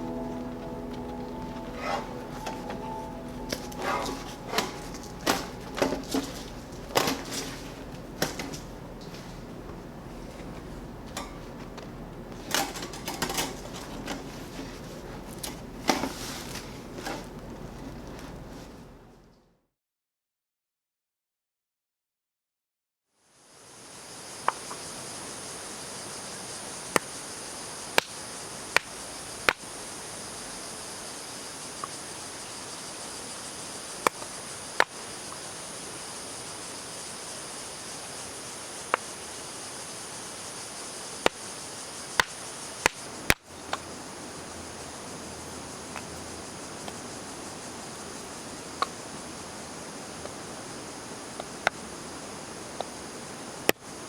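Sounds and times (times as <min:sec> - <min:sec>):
sharp pops from fire: 0:42.2 - 0:43.4.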